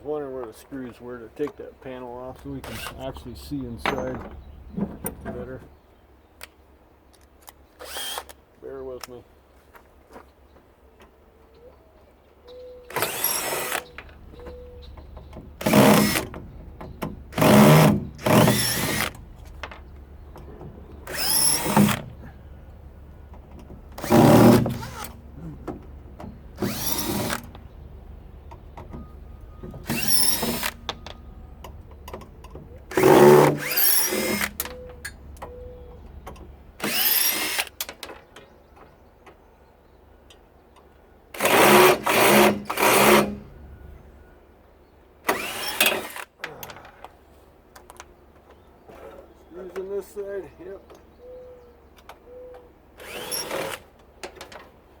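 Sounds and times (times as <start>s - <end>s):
power drill bursts: 2.6s - 3.2s, 7.8s - 8.4s, 12.9s - 14.1s, 15.6s - 16.4s, 17.3s - 19.2s, 21.0s - 22.3s, 24.0s - 25.2s, 26.6s - 27.6s, 29.6s - 31.2s, 32.9s - 34.8s, 36.8s - 37.8s, 41.4s - 43.4s, 45.3s - 46.4s, 53.0s - 53.9s.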